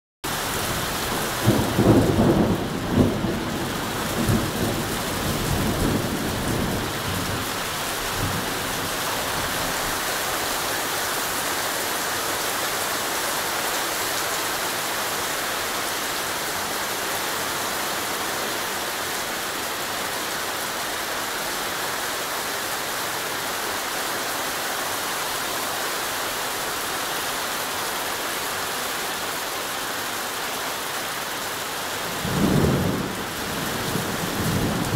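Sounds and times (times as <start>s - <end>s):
heavy rain pouring: 0.2s - 34.9s
thunder rumbling: 0.7s - 7.5s, 32.2s - 34.9s.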